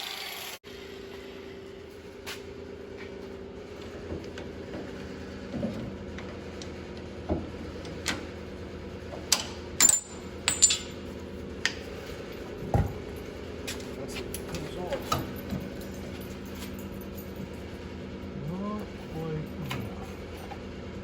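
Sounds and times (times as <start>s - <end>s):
metal tools clinking: 9.4s - 11.1s, 12.4s - 17.6s.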